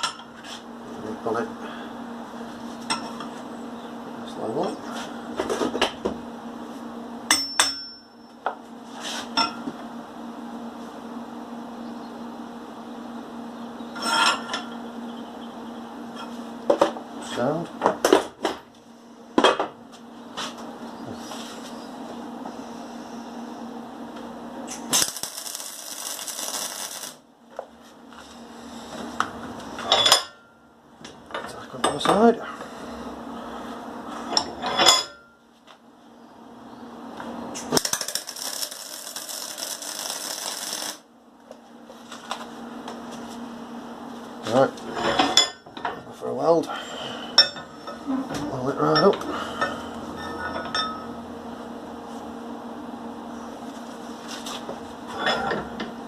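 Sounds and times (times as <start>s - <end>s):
sharp ringing metal knocks: 7.3s - 8.2s
ringing metallic clank: 7.3s - 8.3s, 49.0s - 51.1s
welding arc crackling: 24.7s - 27.3s, 37.7s - 41.1s.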